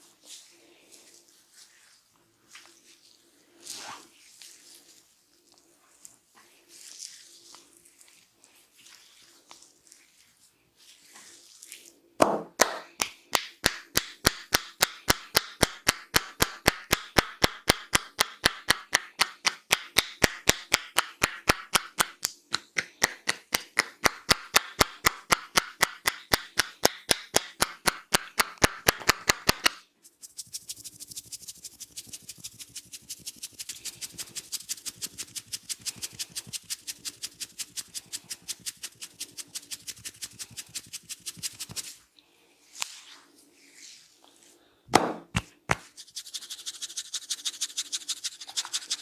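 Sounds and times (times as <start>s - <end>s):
hands slapping head rhythmically: 12.2s - 29.8s, 32.4s - 41.9s, 44.9s - 49.0s.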